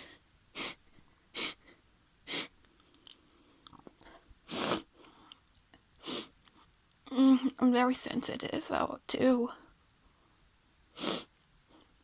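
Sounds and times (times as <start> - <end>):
woman sniffling: 0.0 - 2.6, 4.4 - 5.2, 6.0 - 6.4, 11.0 - 11.3.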